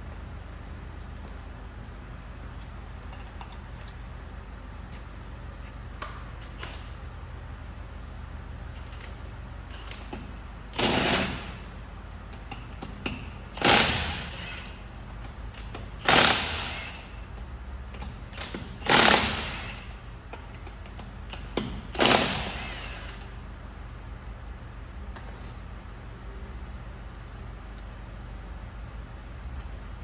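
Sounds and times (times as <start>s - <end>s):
impact wrench rattling: 15.5s - 17.1s, 18.0s - 23.3s.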